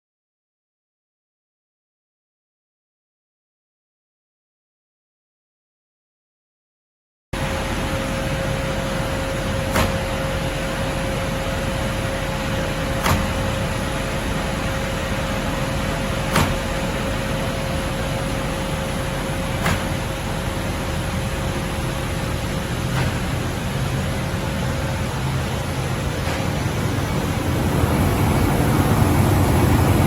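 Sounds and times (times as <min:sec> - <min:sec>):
machinery humming: 0:07.4 - 0:30.0.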